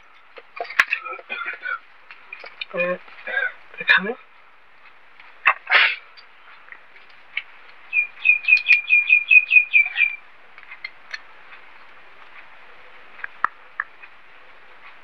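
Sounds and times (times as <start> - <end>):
small bird chirping: 7.8 - 10.2.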